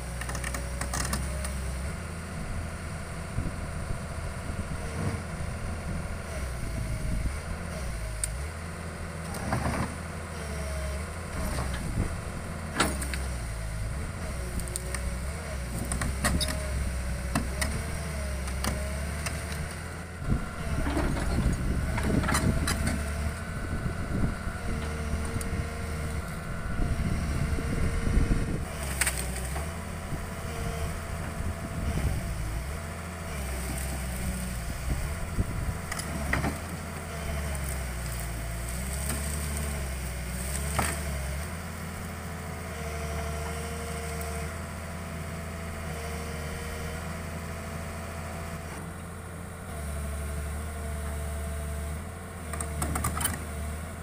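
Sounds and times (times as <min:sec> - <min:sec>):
excavator diesel engine running: 0:00.0 - 0:54.0
hydraulic whine: 0:11.0 - 0:41.8.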